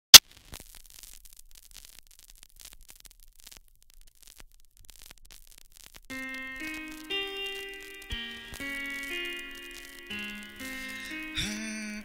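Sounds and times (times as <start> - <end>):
crackling static and hiss: 0.1 - 12.0
sustained keyboard chords: 6.1 - 12.0.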